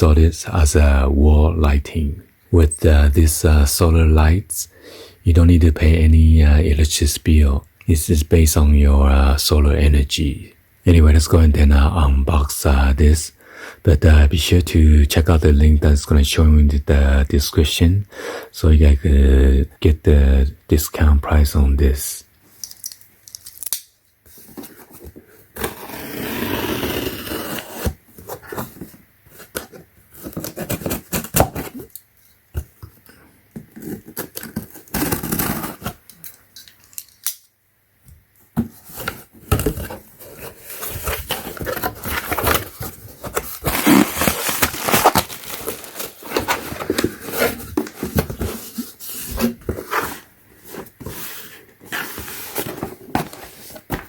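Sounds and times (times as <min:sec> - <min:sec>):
cardboard box opening: 0:24.5 - 0:31.9, 0:33.7 - 0:36.0, 0:38.7 - 0:54.0
packaging rustling: 0:38.8 - 0:51.2.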